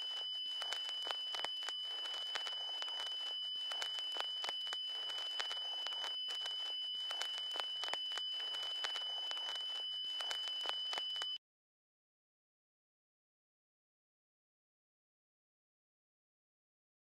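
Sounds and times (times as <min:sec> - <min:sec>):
crackling static with clicks: 0:00.0 - 0:11.4
steady high-pitched tone: 0:00.0 - 0:11.4.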